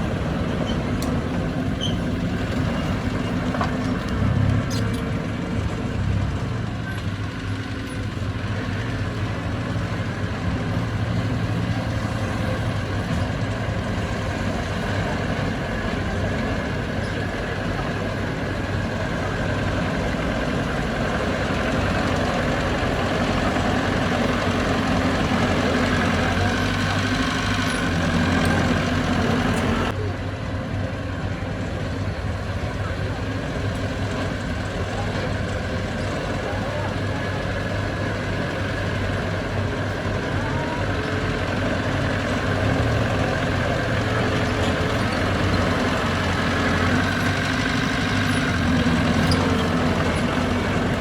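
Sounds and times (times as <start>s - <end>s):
heavy diesel engine running: 0.0s - 51.0s.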